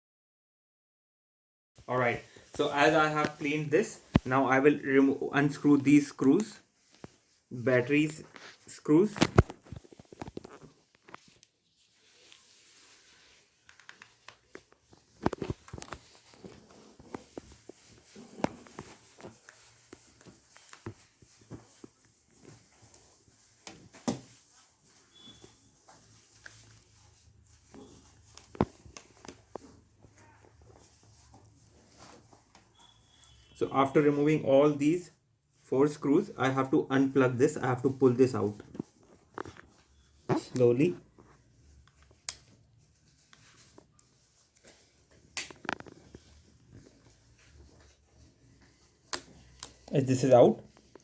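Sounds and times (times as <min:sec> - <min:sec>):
small clicks and scrapes: 0:41.3 - 0:47.8.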